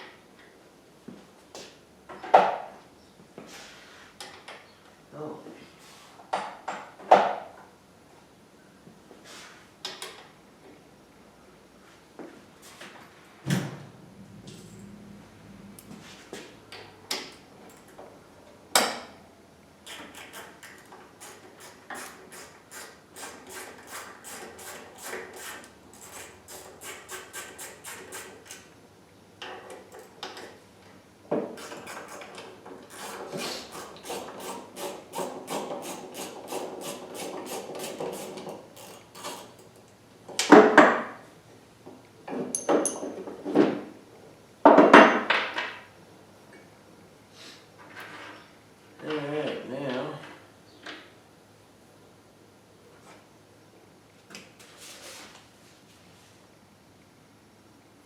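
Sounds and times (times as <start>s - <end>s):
small clicks and scraping rubs: 19.9s - 28.7s, 31.6s - 39.9s.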